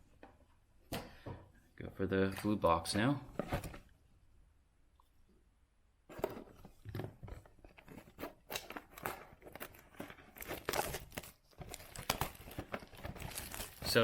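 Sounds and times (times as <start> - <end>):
cardboard box tearing and crinkling: 7.9 - 14.0.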